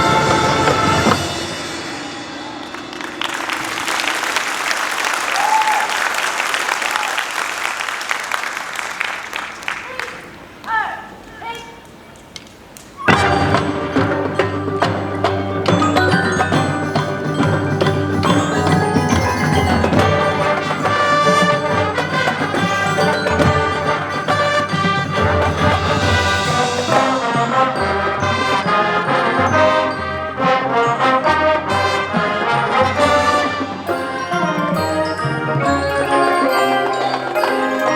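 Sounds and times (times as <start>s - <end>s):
marching band brass chords: 0.0s - 7.0s, 13.1s - 37.9s
marimba and glockenspiel: 13.1s - 32.0s, 32.8s - 37.9s.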